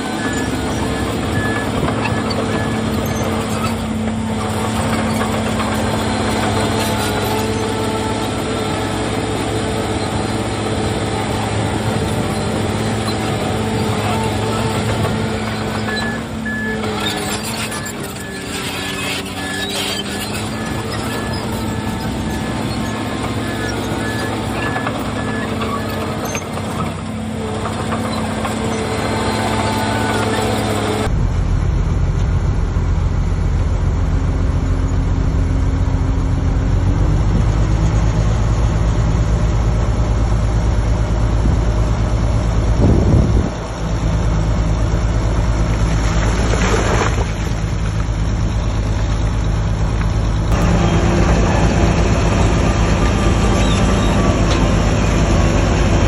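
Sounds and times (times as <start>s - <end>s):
heavy diesel engines running: 0.0s - 56.0s
low engine surge: 0.0s - 56.0s.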